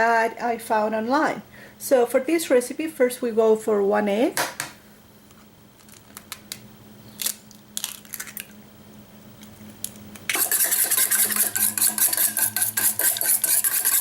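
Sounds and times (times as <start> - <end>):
egg whisked in a bowl: 10.3 - 14.0.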